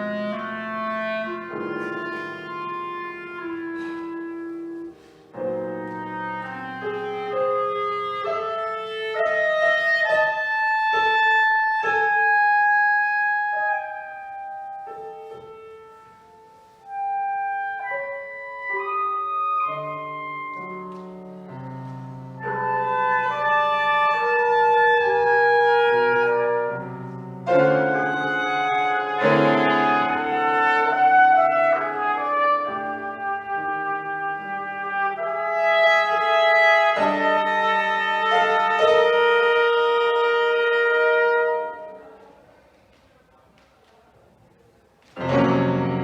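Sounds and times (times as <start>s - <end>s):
clarinet held notes: 0.0s - 42.5s
piano chords: 0.0s - 42.5s, 45.1s - 46.0s.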